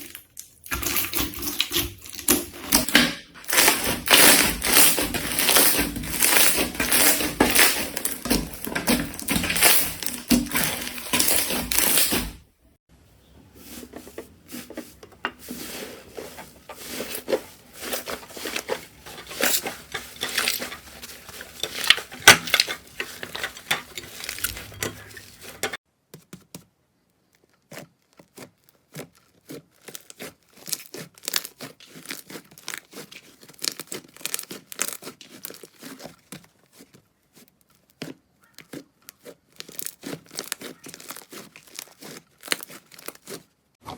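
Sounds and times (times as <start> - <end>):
slime crackling and popping: 0.0 - 12.4, 27.3 - 43.5.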